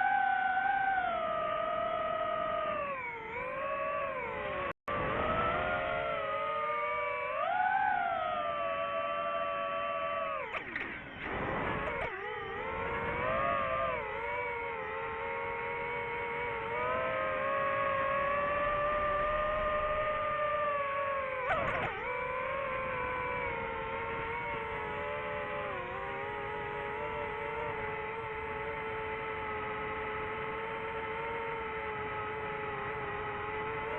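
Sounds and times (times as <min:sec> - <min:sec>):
drone motors whining: 0:00.0 - 0:33.9.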